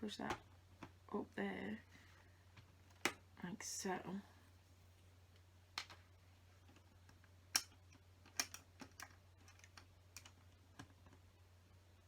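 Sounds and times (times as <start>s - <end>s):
plastic bricks clicking: 7.5s - 11.1s.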